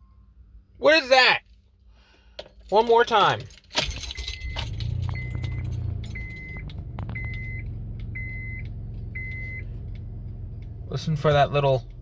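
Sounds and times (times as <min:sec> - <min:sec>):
car engine starting and idling: 0:02.2 - 0:12.0
dashboard warning chime beeping: 0:02.8 - 0:10.5.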